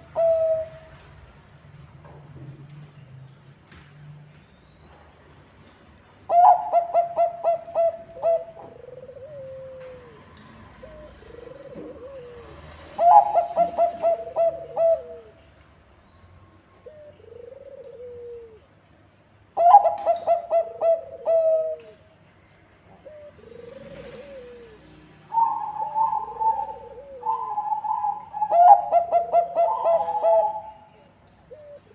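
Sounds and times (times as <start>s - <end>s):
dove cooing song: 0.0s - 1.1s, 6.3s - 15.5s, 16.7s - 18.8s, 19.6s - 22.0s, 22.9s - 31.9s.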